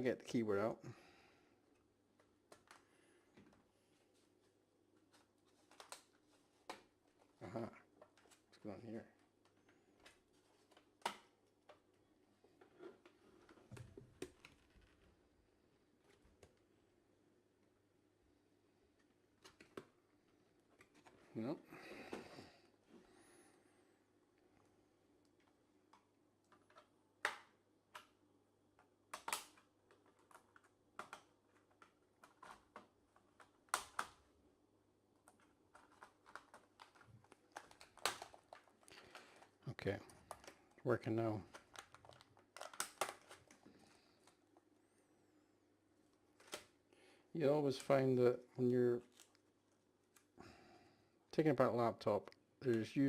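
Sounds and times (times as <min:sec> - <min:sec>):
plastic keyboard clicks and snaps: 0:25.9 - 0:28.2, 0:28.8 - 0:34.3, 0:35.3 - 0:38.8, 0:41.5 - 0:43.6, 0:46.4 - 0:46.7.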